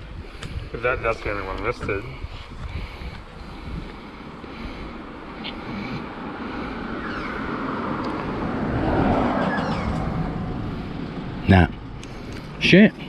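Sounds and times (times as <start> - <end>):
vehicle passing by: 3.5 - 13.0.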